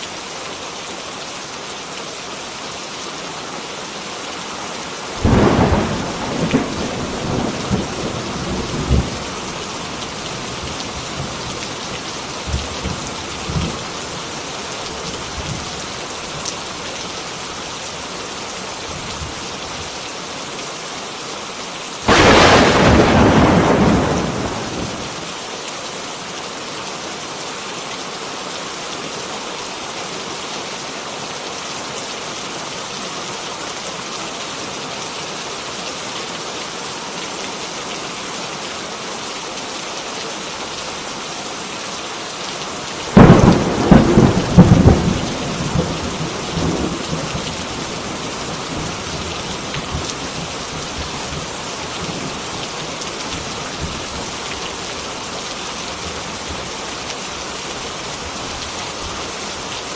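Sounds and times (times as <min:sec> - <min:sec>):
heavy rain: 0:00.0 - 0:59.9
loud thunderclap: 0:05.2 - 0:09.2, 0:22.1 - 0:25.2, 0:43.2 - 0:47.9
thunder rumbling: 0:05.2 - 0:11.6, 0:22.1 - 0:25.2, 0:43.1 - 0:52.4.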